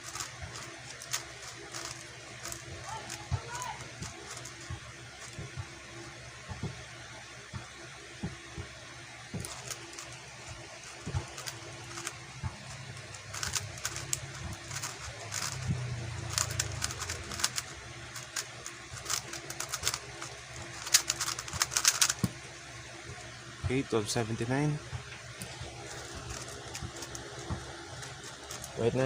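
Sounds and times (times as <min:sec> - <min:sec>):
puzzle cube clicking: 0:00.0 - 0:03.2, 0:10.9 - 0:22.4.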